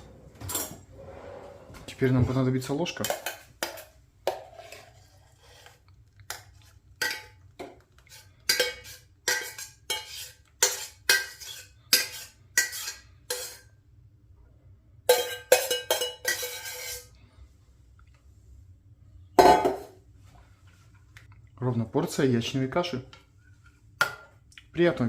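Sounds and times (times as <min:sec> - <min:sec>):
spoon scraping a saucepan: 0:03.1 - 0:07.4, 0:08.0 - 0:13.7, 0:15.1 - 0:17.2.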